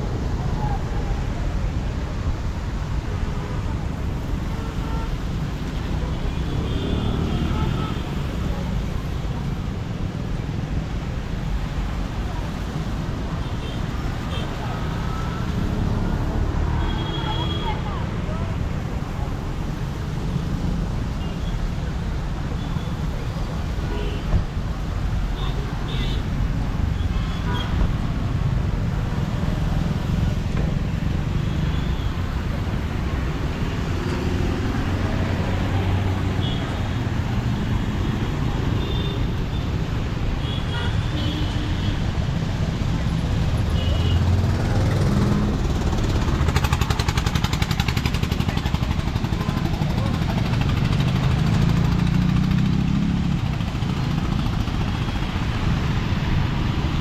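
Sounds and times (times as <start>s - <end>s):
road traffic rumble: 0.0s - 57.0s
vehicle engine hum: 41.8s - 57.0s.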